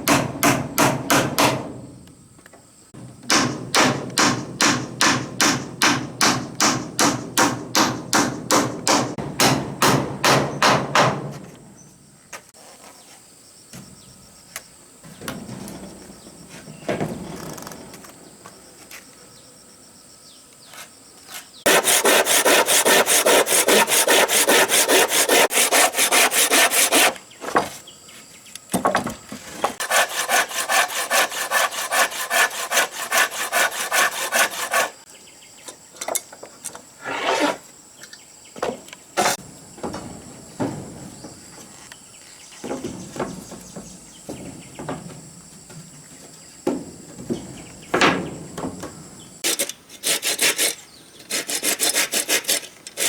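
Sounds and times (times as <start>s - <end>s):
hand saw cutting wood: 21.7s - 27.2s, 29.8s - 35.0s, 49.4s - 53.0s.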